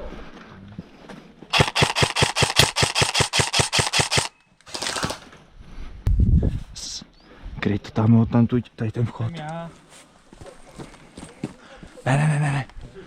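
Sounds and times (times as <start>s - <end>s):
airsoft gun automatic fire: 1.5s - 5.2s.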